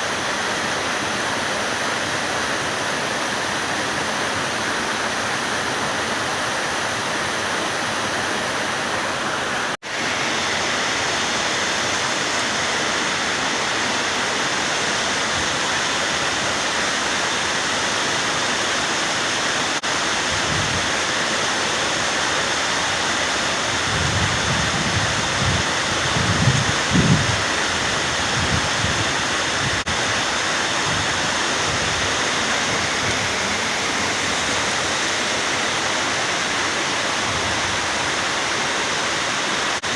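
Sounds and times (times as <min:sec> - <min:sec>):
waterfall rushing: 0:00.0 - 0:39.9
wind buffeting microphone: 0:20.3 - 0:20.9, 0:23.6 - 0:35.1.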